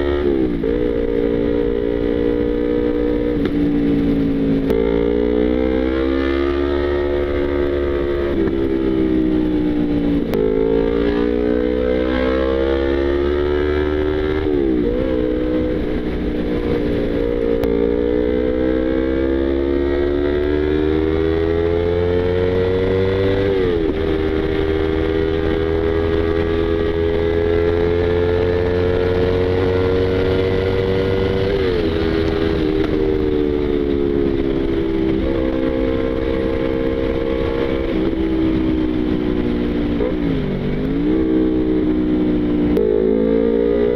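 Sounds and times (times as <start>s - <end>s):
motorcycle engine shifting gears: 0.0s - 43.9s.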